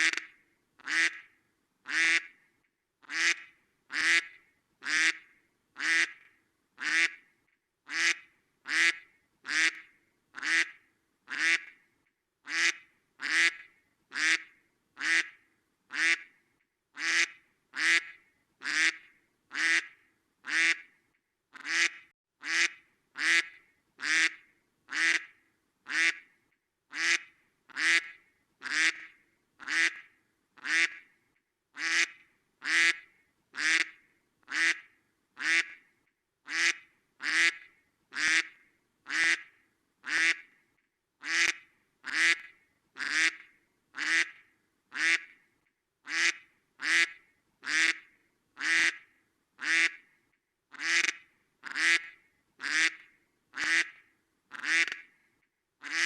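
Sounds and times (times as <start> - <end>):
duck quacking: 0.0 - 1.2, 1.9 - 2.3, 3.1 - 5.2, 5.8 - 6.2, 6.8 - 7.2, 7.9 - 11.7, 12.5 - 16.3, 17.0 - 20.9, 21.6 - 25.3, 25.9 - 26.2, 26.9 - 31.0, 31.8 - 35.8, 36.5 - 40.5, 41.2 - 43.4, 44.0 - 45.3, 46.1 - 48.0, 48.6 - 49.0, 49.6 - 50.0, 50.7 - 53.0, 53.6 - 55.0.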